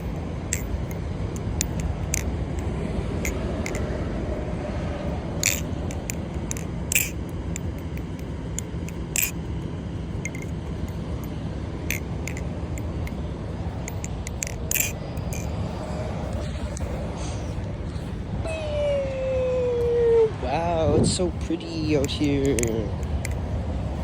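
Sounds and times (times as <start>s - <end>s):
butterfly knife metallic clicks: 0.0s - 3.9s, 5.4s - 9.4s, 13.8s - 15.6s, 21.9s - 23.4s
low rumble: 0.0s - 24.0s.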